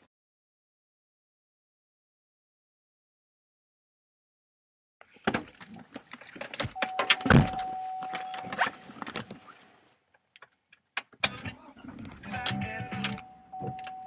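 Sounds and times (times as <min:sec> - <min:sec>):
keys jingling: 0:06.1 - 0:09.2, 0:11.2 - 0:14.0
car electronic warning tone: 0:06.8 - 0:08.9, 0:12.4 - 0:14.0
car clicking: 0:10.4 - 0:14.0.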